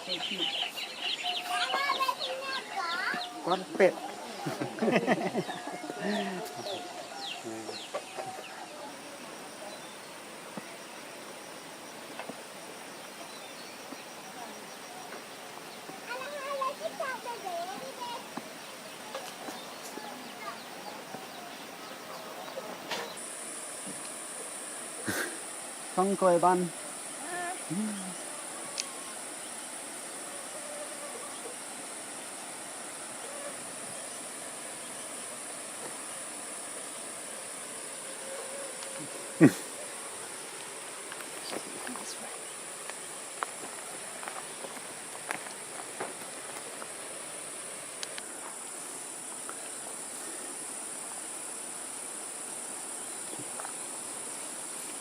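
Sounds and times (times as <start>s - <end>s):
insects droning: 0.0s - 55.0s
distant voices or animal calls: 27.1s - 32.1s, 33.0s - 34.3s, 37.8s - 40.8s
faint ticks: 47.9s - 48.6s.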